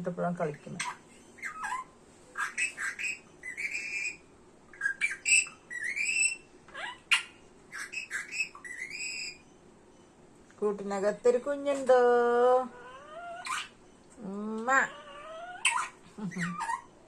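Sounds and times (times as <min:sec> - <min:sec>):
parrot chattering and whistling: 0:00.5 - 0:09.5, 0:12.7 - 0:13.9, 0:14.7 - 0:17.0
parrot squawks: 0:00.5 - 0:09.5, 0:12.7 - 0:13.8, 0:14.7 - 0:17.0.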